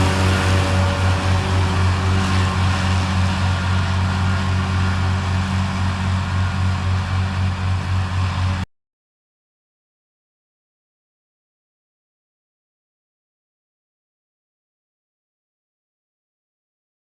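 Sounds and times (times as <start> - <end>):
tractor engine running: 0.0 - 8.7.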